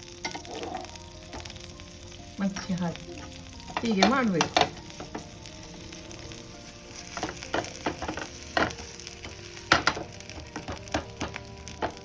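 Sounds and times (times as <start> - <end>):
flatbread sizzling in oil: 0.0 - 12.0
knocks against pan: 3.7 - 5.2, 9.7 - 12.0.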